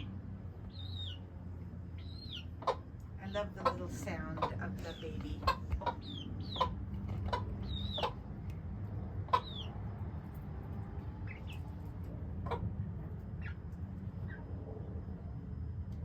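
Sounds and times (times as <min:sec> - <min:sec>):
chick peeping: 0:00.0 - 0:01.3, 0:02.0 - 0:10.4, 0:11.0 - 0:14.5
steady low hum: 0:00.0 - 0:16.0
hen clucks: 0:02.0 - 0:08.5, 0:09.2 - 0:09.8, 0:12.3 - 0:12.8.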